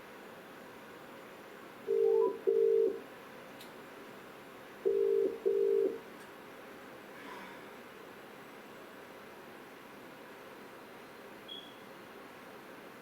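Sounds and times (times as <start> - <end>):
telephone ring-back tone: 1.9 - 3.0, 4.9 - 6.0.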